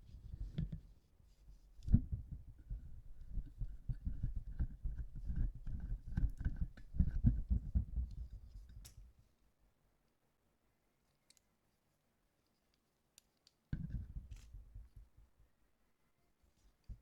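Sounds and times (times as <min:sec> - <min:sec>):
small sharp clicks: 0:11.2 - 0:11.5.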